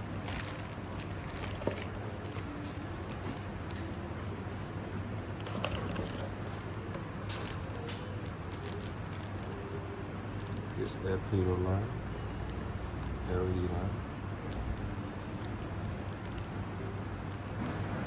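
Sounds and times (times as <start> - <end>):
steady low hum: 0.0 - 18.0
plastic parts clicking and rustling: 0.1 - 4.0, 5.4 - 9.7.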